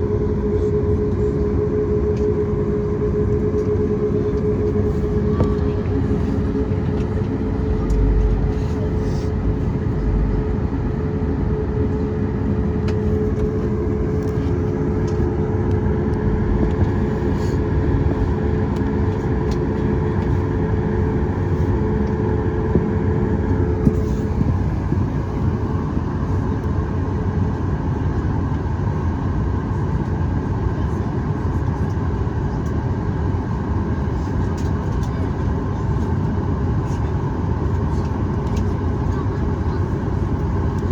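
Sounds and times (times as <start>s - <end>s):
steady hum: 0.0s - 31.0s
aircraft cabin engine rumble: 0.0s - 40.9s.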